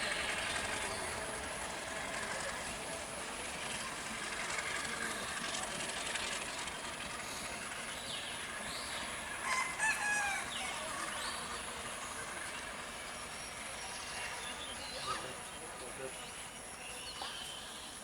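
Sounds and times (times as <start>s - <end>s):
steady background noise: 0.0s - 18.0s
rooster crowing: 9.4s - 10.9s.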